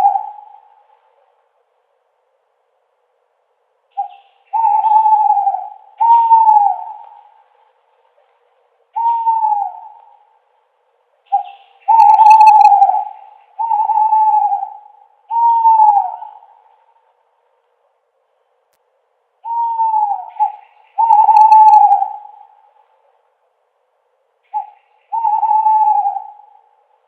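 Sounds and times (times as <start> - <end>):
owl hooting: 0.0 - 1.4, 3.9 - 10.6, 11.2 - 17.2, 19.4 - 23.2, 24.4 - 27.0.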